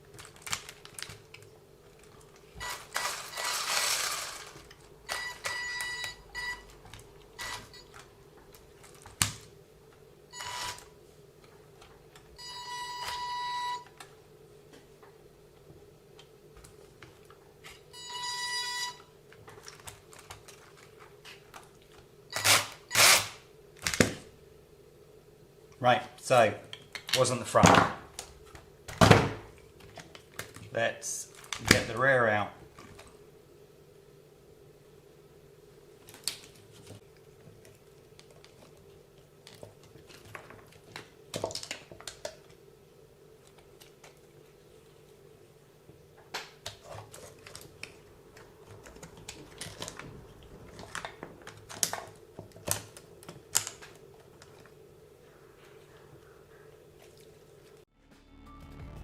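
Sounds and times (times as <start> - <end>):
faint steady hum: 0.0 - 57.9
toy car electric drivetrain grinding: 2.6 - 4.6.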